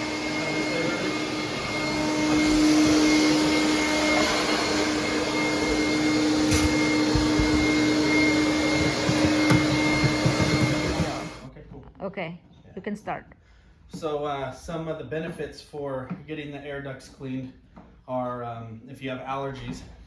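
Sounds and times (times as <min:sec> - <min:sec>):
vacuum cleaner humming: 0:00.0 - 0:11.5
low knocks: 0:06.5 - 0:08.0, 0:08.6 - 0:11.4.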